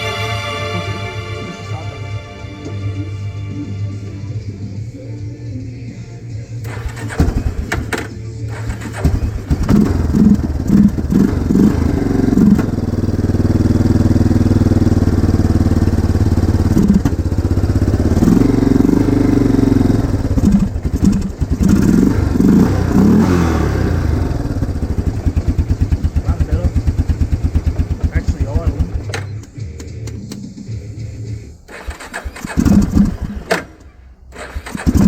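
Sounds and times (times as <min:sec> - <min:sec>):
quad engine cranking and revving: 0:06.6 - 0:29.2, 0:31.7 - 0:35.0.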